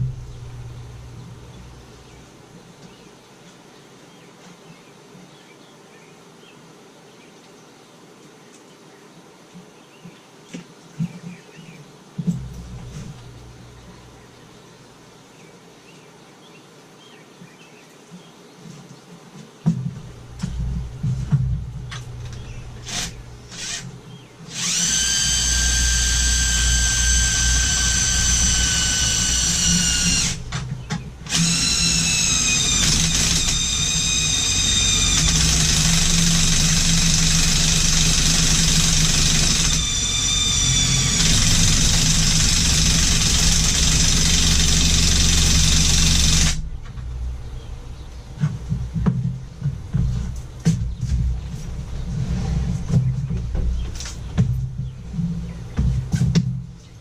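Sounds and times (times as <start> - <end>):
electric winch motor whining: 22.2 - 46.7.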